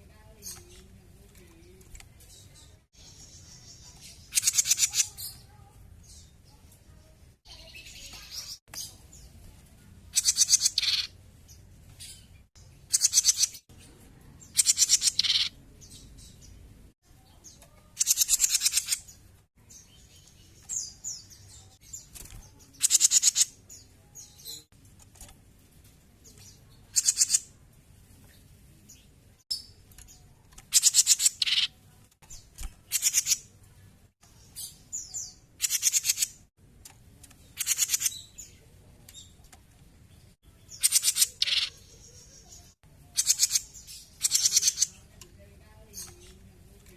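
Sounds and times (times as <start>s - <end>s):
bird singing in rattling bursts: 1.8s - 5.5s, 10.1s - 16.2s, 17.6s - 19.3s, 21.7s - 23.6s, 26.3s - 27.5s, 29.5s - 33.5s, 34.6s - 36.5s, 37.4s - 38.5s, 40.6s - 45.0s.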